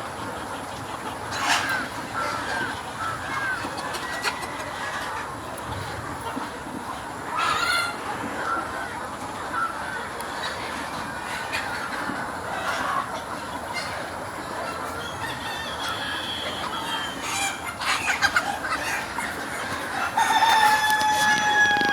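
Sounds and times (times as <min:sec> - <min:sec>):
chickens clucking: 0:00.0 - 0:21.9.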